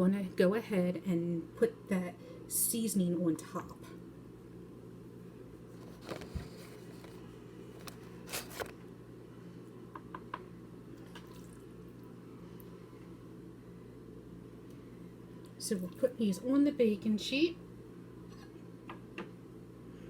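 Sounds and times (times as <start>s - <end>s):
wet squishes of raw chicken: 11.1s - 11.6s.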